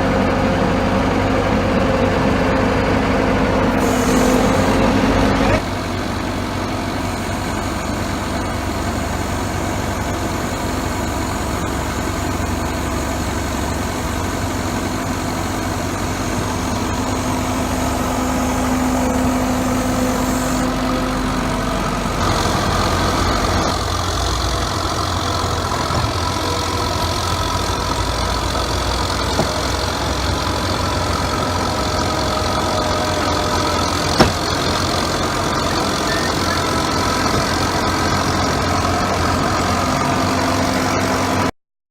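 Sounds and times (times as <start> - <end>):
diesel engine idling: 0.0 - 41.5
steady tones: 14.1 - 41.2.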